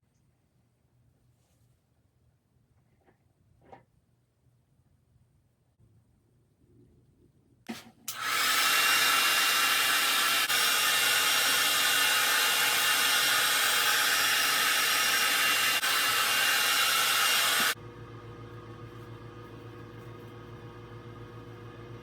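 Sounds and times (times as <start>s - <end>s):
hair dryer blowing: 8.1s - 17.8s.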